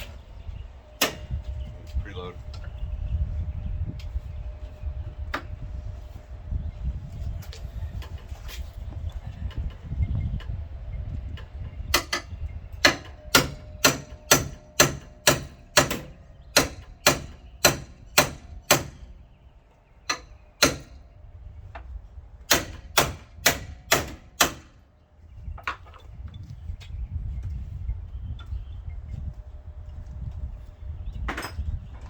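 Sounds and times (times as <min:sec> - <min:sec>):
hammer striking metal: 0:11.9 - 0:19.1, 0:20.1 - 0:21.0, 0:22.5 - 0:24.7.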